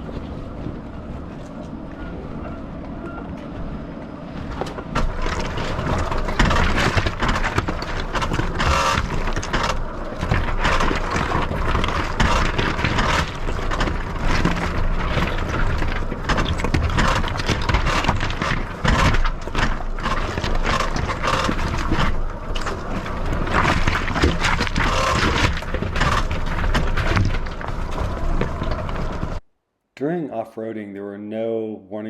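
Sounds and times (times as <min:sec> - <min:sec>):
suspension knocks and clatter: 0:00.0 - 0:29.4
tyres crunching on rock and gravel: 0:04.8 - 0:29.4.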